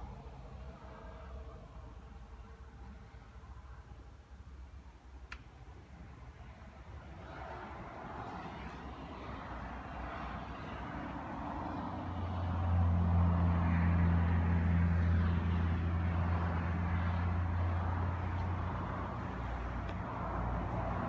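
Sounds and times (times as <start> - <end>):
vehicle engine humming: 7.6 - 21.0.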